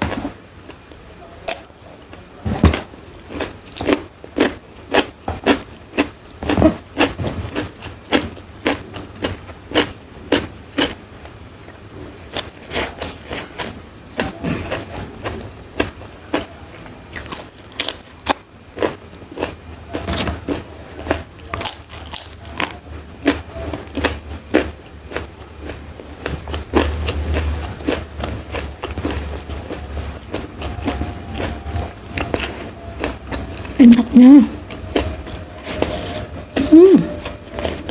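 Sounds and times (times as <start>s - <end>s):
crunchy bites and chewing: 2.6s - 11.0s, 12.1s - 33.8s
low hum: 26.9s - 37.9s.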